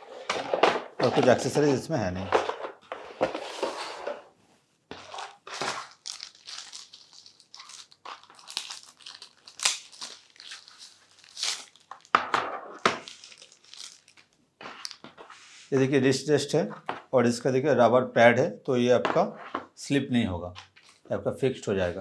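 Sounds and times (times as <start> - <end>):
packaging crinkling and rustling: 5.0 - 15.2, 20.6 - 21.1.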